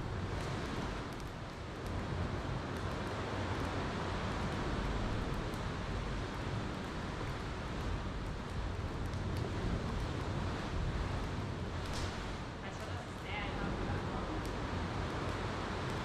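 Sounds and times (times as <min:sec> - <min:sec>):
campfire crackles: 0:00.0 - 0:16.0
ocean waves breaking: 0:09.7 - 0:15.9.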